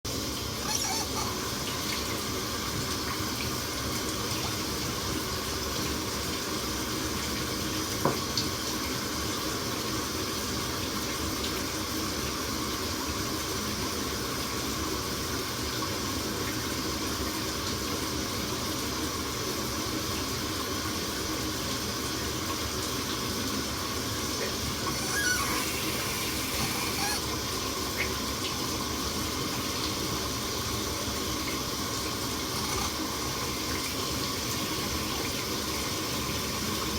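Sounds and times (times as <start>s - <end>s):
shower running: 0.1s - 36.9s
sink tap running: 0.2s - 9.2s, 22.6s - 36.9s.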